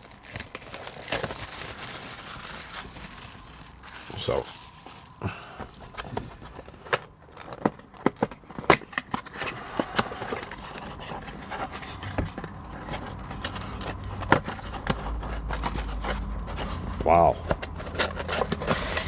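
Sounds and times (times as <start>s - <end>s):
cardboard box tearing: 0.0s - 5.1s, 17.6s - 19.0s
cardboard rustling: 0.0s - 19.0s.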